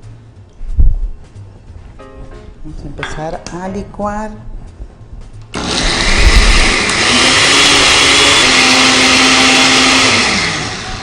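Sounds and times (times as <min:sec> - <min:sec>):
electric blender whirring: 0:05.5 - 0:11.0.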